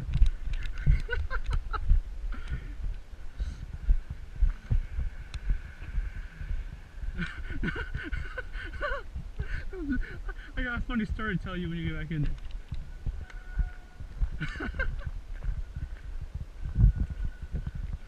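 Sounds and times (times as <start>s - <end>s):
sharp clicks: 0.1s - 1.6s, 12.2s - 13.4s
low thumps and knocks: 12.2s - 18.0s.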